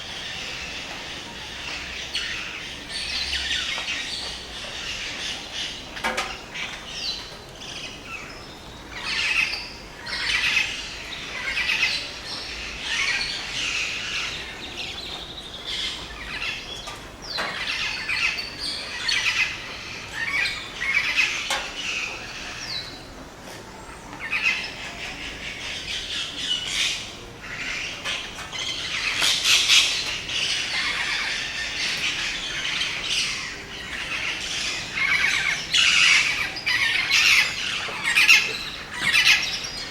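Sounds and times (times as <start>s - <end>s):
birds chirping: 0.0s - 39.9s.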